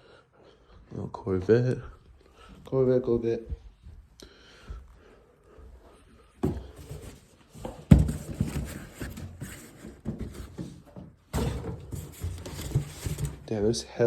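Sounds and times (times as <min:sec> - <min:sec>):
irregular knocks and clatter: 0:06.4 - 0:13.4.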